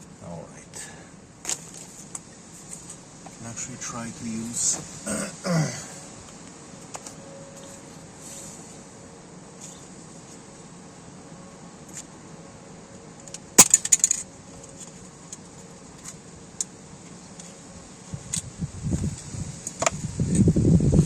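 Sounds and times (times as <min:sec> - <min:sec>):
metallic clicking rattle: 0:13.2 - 0:15.4
wind buffeting microphone: 0:18.0 - 0:21.0.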